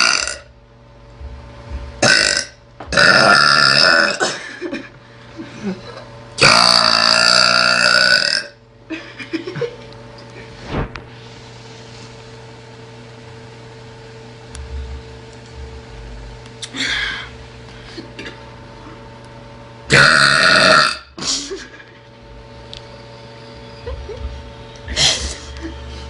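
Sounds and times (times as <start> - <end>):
woman burping: 0.0 - 0.5, 2.0 - 4.8, 6.4 - 8.6, 19.9 - 21.7.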